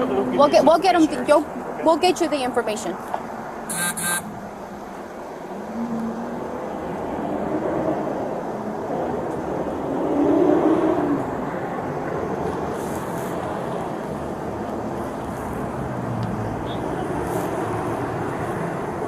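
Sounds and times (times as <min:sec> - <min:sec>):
road noise: 0:00.0 - 0:19.0.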